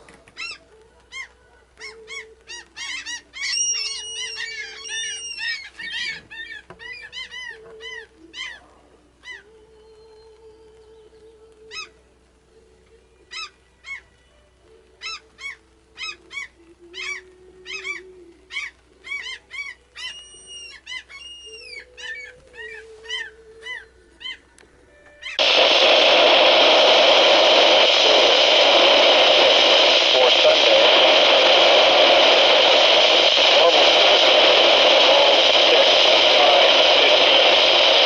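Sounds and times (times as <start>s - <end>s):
bird chirping: 0.3s - 8.6s
loud steady hiss: 25.4s - 38.0s.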